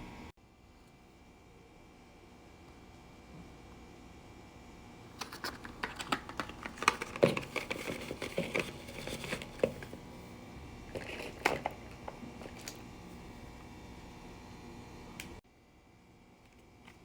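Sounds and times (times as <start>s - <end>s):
packaging crinkling: 5.2s - 10.0s, 10.9s - 12.9s.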